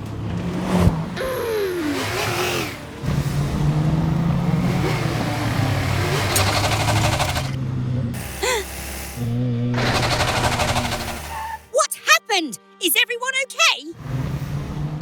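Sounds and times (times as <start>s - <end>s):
cartoon vehicle engines running hard: 0.0s - 11.7s.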